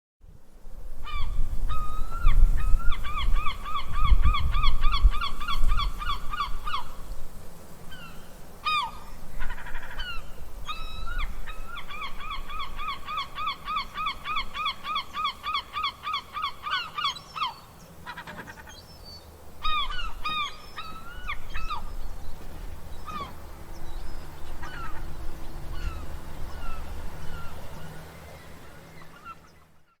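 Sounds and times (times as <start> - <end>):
gulls calling: 1.0 - 7.1, 7.8 - 30.0.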